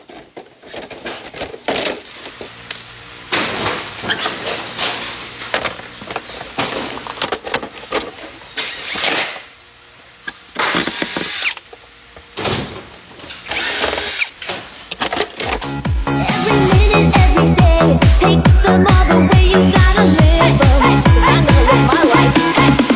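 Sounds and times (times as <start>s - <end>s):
workshop tool rasping: 7.9s - 9.4s, 10.6s - 11.7s, 13.4s - 14.5s.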